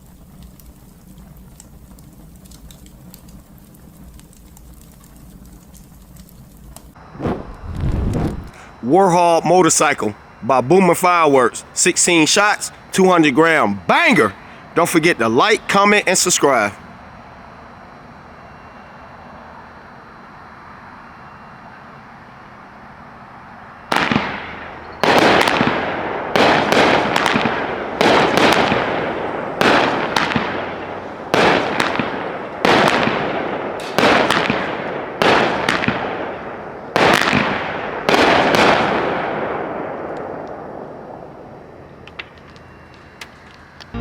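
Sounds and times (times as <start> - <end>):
firework bangs: 7.0 - 8.8, 23.9 - 40.4.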